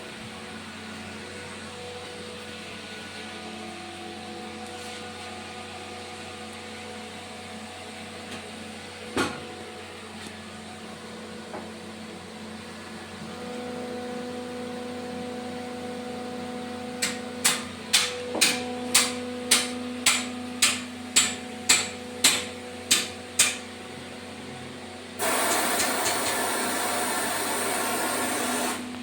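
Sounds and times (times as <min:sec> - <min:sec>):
air hissing: 0:25.2 - 0:28.9
compressor humming: 0:25.2 - 0:29.0.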